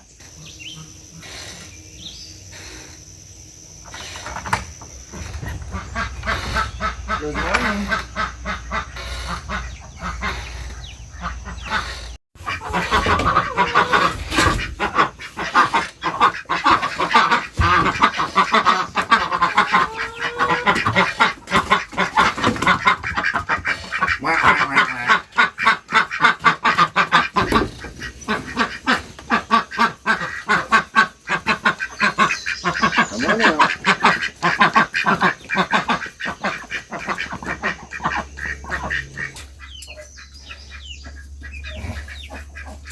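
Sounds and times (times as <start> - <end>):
waterfowl quacking and honking: 5.6 - 42.9.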